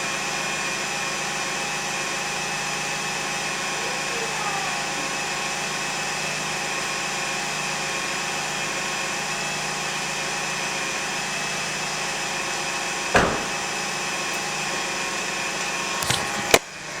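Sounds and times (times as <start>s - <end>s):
car engine whining: 0.8s - 17.0s
sharp engine knock: 13.2s - 13.7s.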